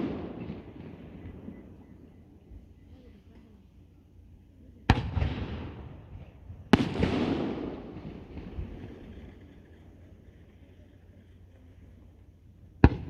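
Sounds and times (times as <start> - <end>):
rolling rumble: 6.1 - 13.0.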